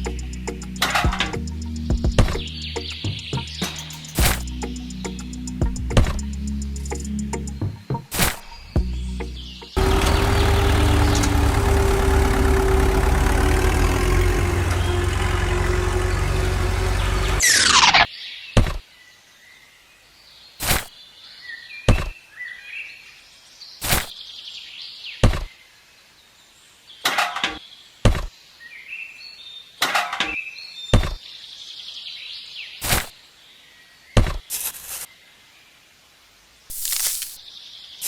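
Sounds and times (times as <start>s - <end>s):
sharp knocks: 2.1s - 2.4s, 21.9s - 22.2s, 25.2s - 25.5s, 27.4s - 28.3s, 31.0s - 31.2s
short falling whine: 9.8s - 18.1s.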